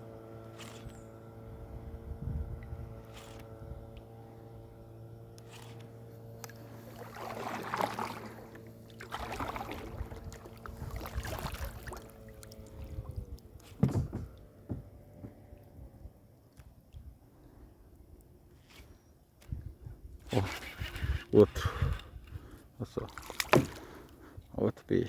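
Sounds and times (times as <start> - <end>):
motor hum: 0.0 - 24.6
paddle strokes splashing water: 5.4 - 14.0, 23.0 - 24.2.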